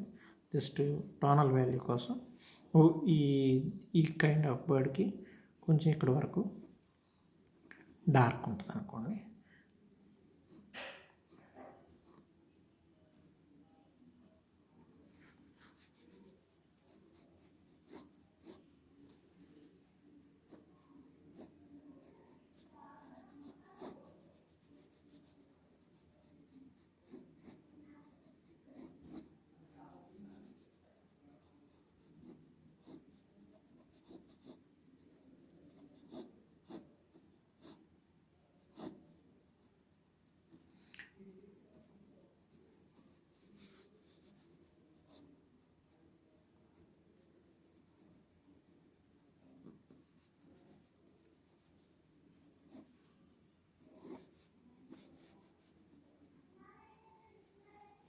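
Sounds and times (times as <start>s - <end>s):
drawing tool scratching on paper: 21.3s - 29.3s, 30.1s - 37.9s, 53.7s - 55.8s.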